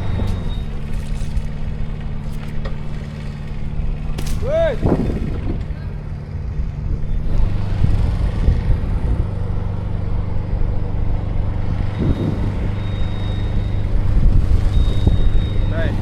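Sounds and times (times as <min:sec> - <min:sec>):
machinery engine running: 0:00.0 - 0:16.0.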